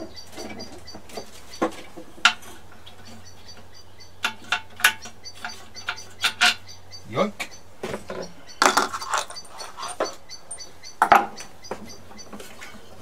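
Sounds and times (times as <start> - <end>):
hand tools clinking on metal: 4.2 - 6.6, 8.1 - 11.3.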